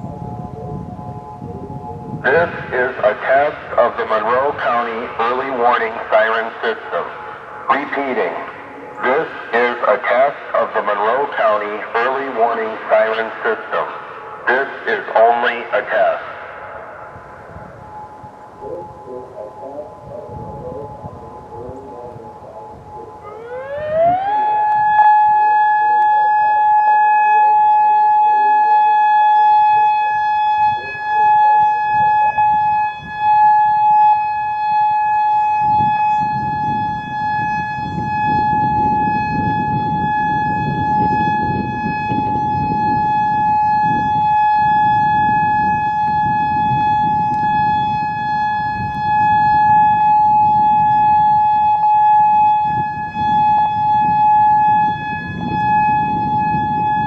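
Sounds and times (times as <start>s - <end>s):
low rumbling noise: 0.0s - 24.9s
tornado siren steady tone: 0.0s - 57.0s.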